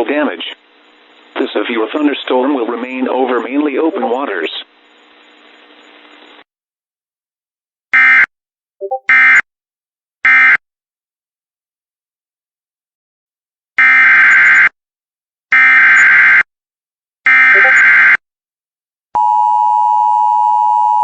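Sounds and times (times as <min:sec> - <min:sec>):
warbling digital alert tones: 0:03.8 - 0:04.5, 0:08.8 - 0:09.2.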